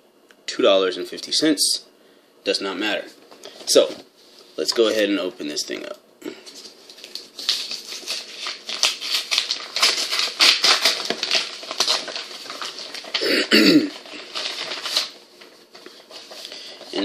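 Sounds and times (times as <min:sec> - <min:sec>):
paper envelope tearing: 0:06.6 - 0:17.0.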